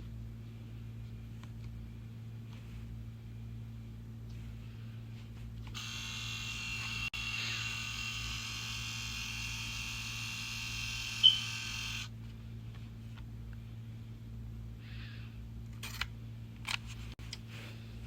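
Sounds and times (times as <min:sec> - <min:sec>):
label maker motor whirring: 0:05.7 - 0:12.1.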